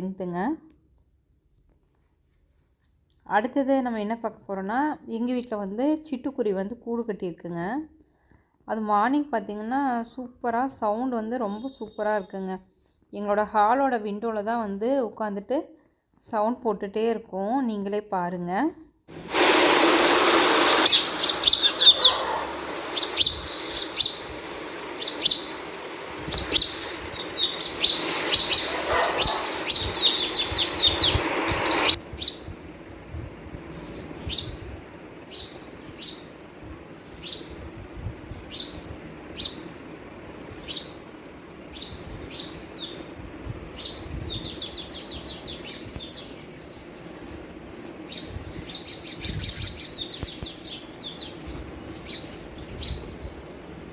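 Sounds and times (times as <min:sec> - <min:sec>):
steady hiss: 0:19.1 - 0:51.0
sparrows chirping: 0:20.7 - 0:32.5, 0:35.3 - 0:36.4, 0:37.1 - 0:37.6, 0:40.3 - 0:41.1, 0:41.7 - 0:43.1, 0:43.8 - 0:53.3.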